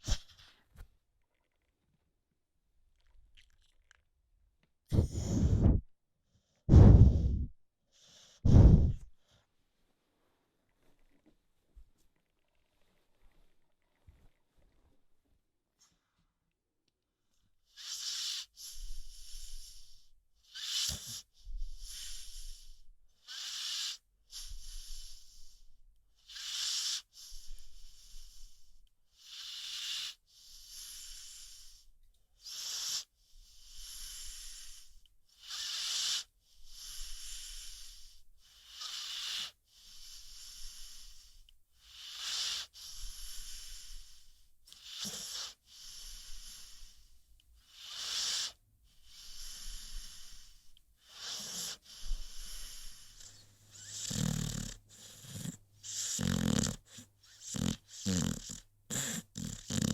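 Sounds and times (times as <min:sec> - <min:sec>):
dog snoring: 0:06.7 - 0:09.1, 0:17.7 - 0:25.6, 0:26.2 - 0:59.9.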